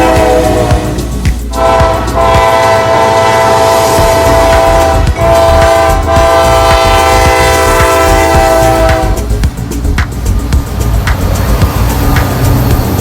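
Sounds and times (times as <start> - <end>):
locomotive air horn chord: 0.0 - 9.4
train rumble: 0.0 - 13.0.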